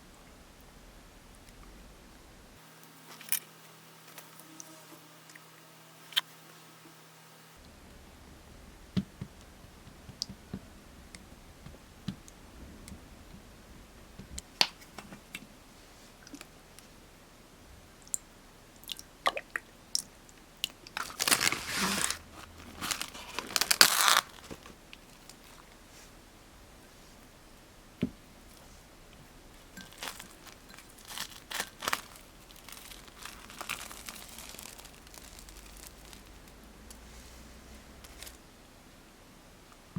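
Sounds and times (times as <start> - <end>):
crinkling and crackling handling: 20.6 - 26.2, 28.5 - 38.4.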